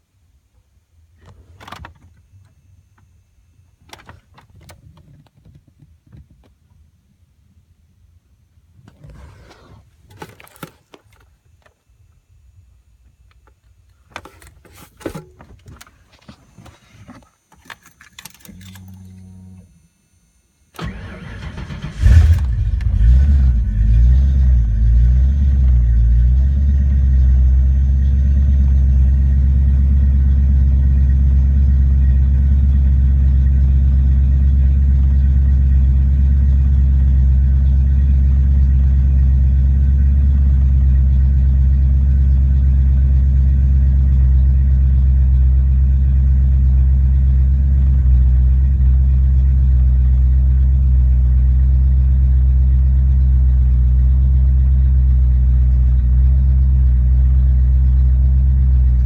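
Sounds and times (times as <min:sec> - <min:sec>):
car engine idling: 0:20.8 - 0:59.0.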